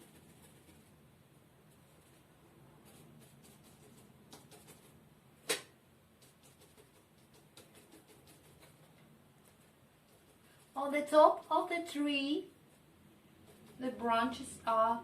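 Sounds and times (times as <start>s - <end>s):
stiff brush tapping on paper: 2.9s - 10.7s.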